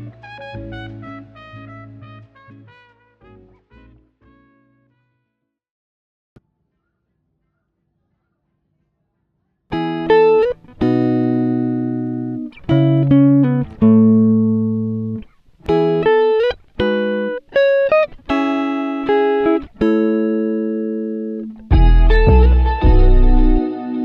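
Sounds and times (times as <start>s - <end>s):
guitar ringing chords: 9.7s - 24.0s
music with deep bass: 21.7s - 23.7s.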